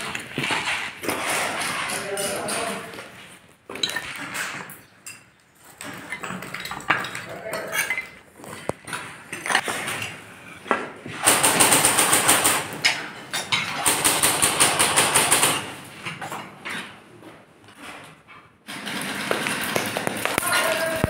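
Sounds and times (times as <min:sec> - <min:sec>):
airsoft gun bursts: 0:11.2 - 0:12.7, 0:13.8 - 0:15.7.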